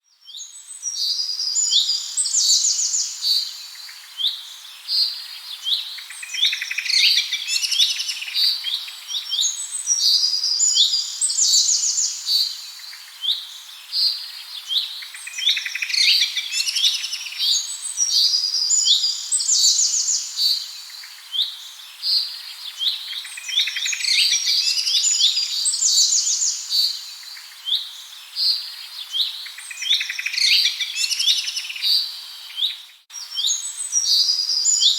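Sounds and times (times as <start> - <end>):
songbirds chirping and trilling: 0.1 - 34.9.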